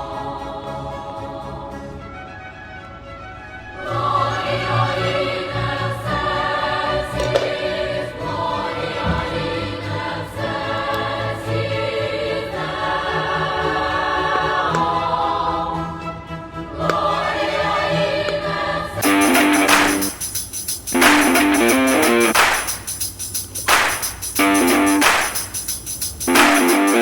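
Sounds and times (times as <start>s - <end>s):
choir singing: 0.0s - 2.5s, 3.7s - 20.2s.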